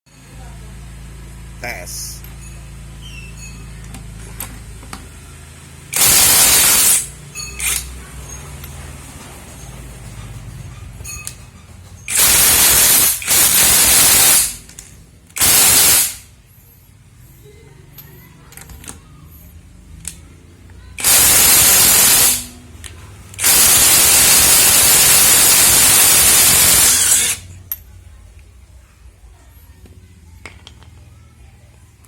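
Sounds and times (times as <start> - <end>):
impact wrench hammering: 5.9 - 7.9, 12.0 - 14.7, 15.4 - 16.3, 21.0 - 22.6, 23.3 - 27.5.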